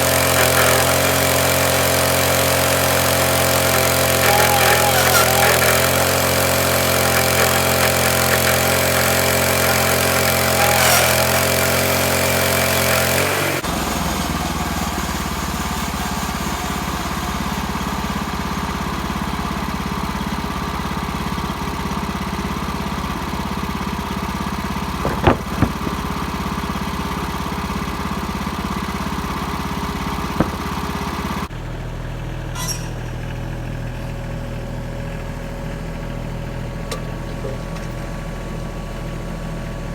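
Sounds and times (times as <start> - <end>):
engine running: 0.0 - 39.9
sharp knocks: 25.0 - 26.3, 30.4 - 31.0.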